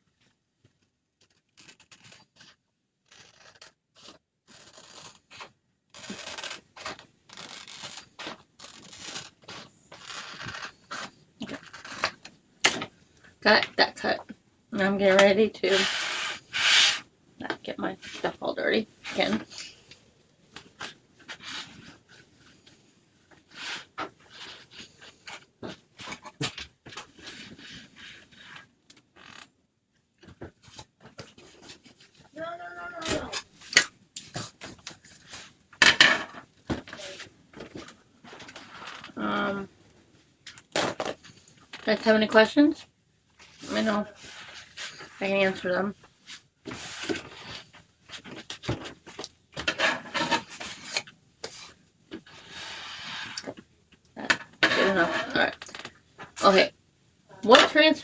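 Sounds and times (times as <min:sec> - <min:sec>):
hands scraping and rustling materials: 0:01.2 - 0:13.4, 0:18.0 - 0:29.5, 0:30.2 - 0:39.5, 0:43.4 - 0:53.7.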